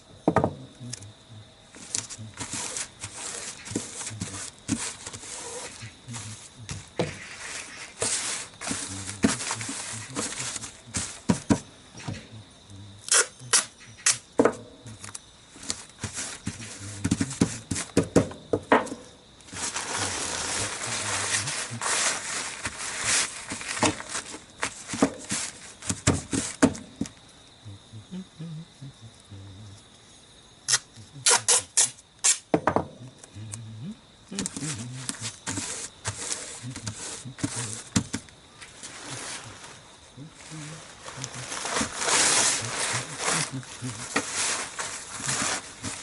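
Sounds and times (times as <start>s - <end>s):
material rustling and rubbing: 1.8s - 11.6s, 19.5s - 26.6s, 40.8s - 46.0s.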